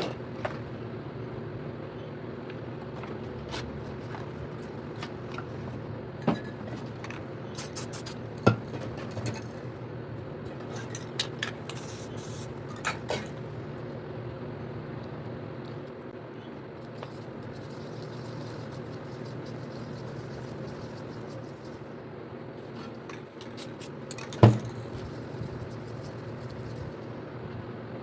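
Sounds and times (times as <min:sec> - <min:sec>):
steady low hum: 0:00.0 - 0:28.0
aerosol spray can hissing: 0:07.6 - 0:08.2.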